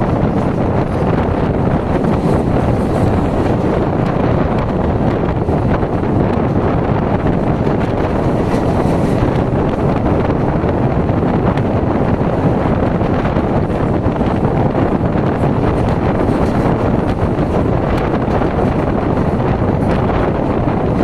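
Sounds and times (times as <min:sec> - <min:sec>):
train rumbling at speed: 0:00.0 - 0:21.0
wind buffeting microphone: 0:00.0 - 0:21.0.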